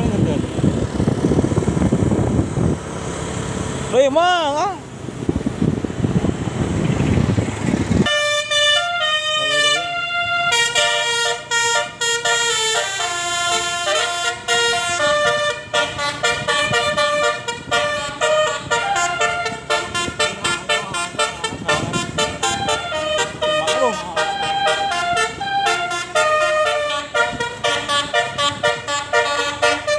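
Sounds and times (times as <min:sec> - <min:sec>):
musical air horn playing a tune: 0:08.0 - 0:29.9.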